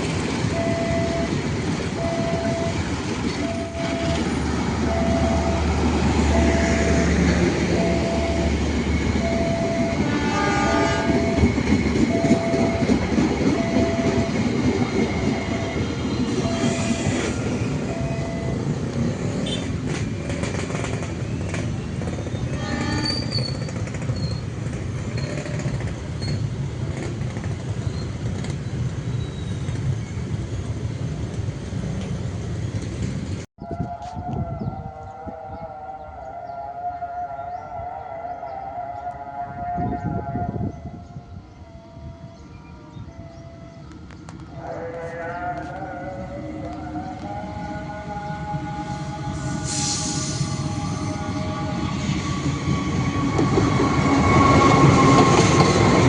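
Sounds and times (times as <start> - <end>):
train wheels rumbling on rails: 0.0 - 35.4, 43.1 - 56.0
crossing warning signal beeping: 0.4 - 19.6, 39.8 - 48.0
train horn blast: 4.9 - 8.6, 9.2 - 11.6, 19.4 - 19.8, 22.5 - 23.4, 33.6 - 56.0.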